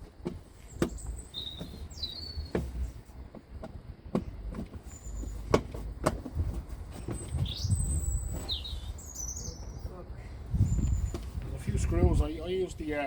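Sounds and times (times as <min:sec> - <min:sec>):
small birds chirping: 0:00.2 - 0:03.2, 0:04.7 - 0:05.9, 0:06.9 - 0:13.0.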